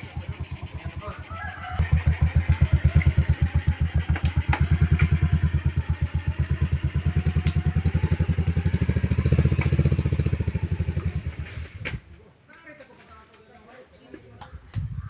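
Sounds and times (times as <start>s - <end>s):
vehicle engine chugging: 0.0s - 11.8s.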